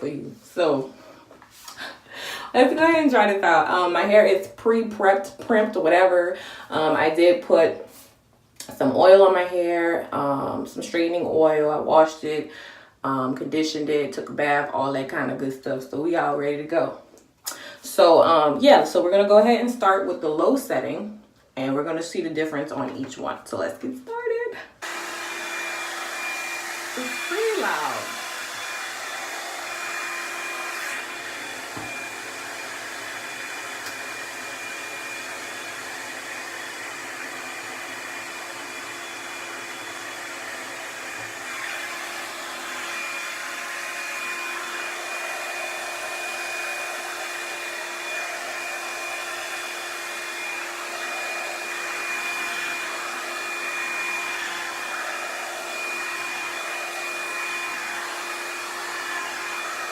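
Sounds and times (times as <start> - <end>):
hair dryer running: 0.0 - 4.4, 24.7 - 59.9.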